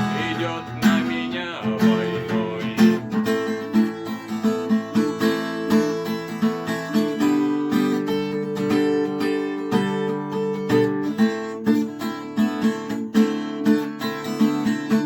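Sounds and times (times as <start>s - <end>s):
acoustic guitar strumming chords: 0.0s - 11.9s.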